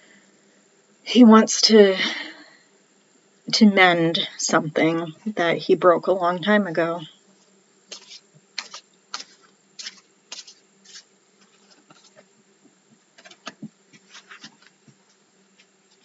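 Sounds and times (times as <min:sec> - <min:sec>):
cards clicking: 0:07.9 - 0:11.0, 0:13.2 - 0:14.7
cards rustling: 0:07.9 - 0:12.3, 0:13.2 - 0:16.0.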